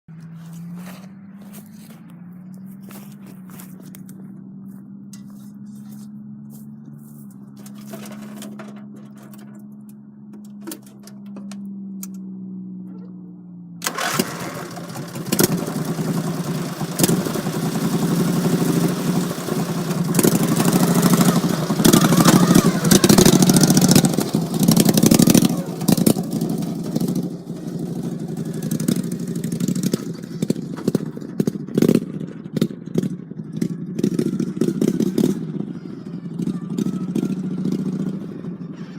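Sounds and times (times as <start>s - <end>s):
rattling and clatter: 7.5s - 11.6s, 13.8s - 35.5s
small engine revving: 13.8s - 38.9s.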